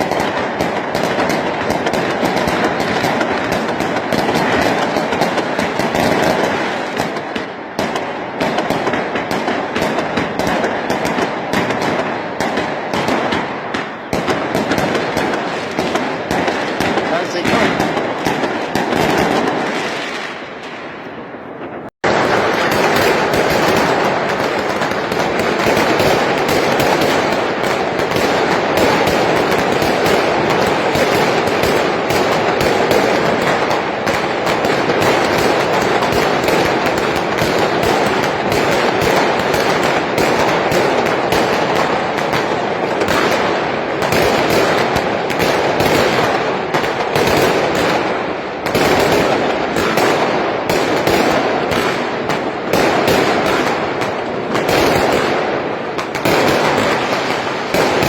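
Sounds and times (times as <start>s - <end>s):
fireworks and firecrackers crackling: 0.0s - 58.0s.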